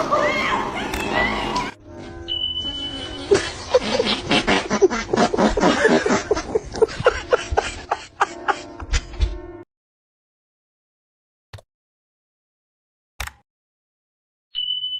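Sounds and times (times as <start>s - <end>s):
person laughing hard: 3.1s - 9.2s.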